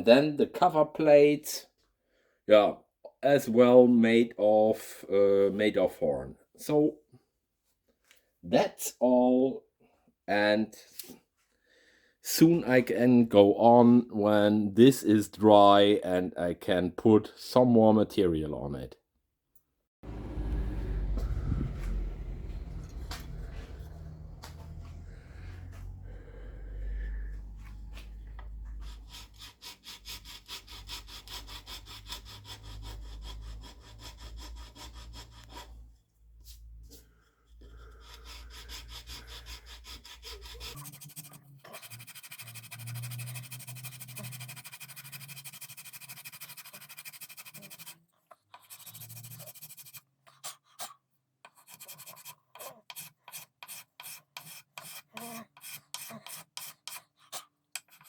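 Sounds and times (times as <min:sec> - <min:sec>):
low hum: 0:20.0 - 0:29.2
hand file strokes: 0:20.1 - 0:50.6, 0:51.5 - 0:58.0.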